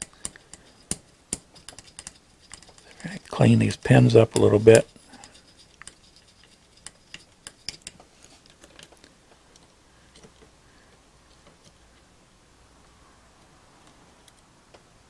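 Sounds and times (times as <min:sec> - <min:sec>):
pen scratching metal pins: 0:00.3 - 0:07.9.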